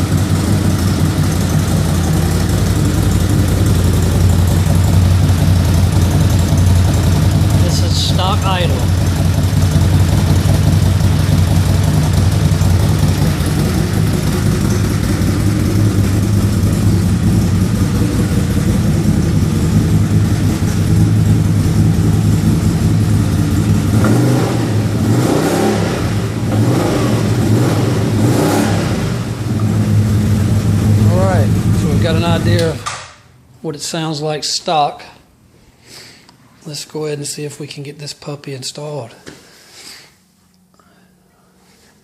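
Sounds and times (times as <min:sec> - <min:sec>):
engine idling and revving: 0:00.0 - 0:33.0.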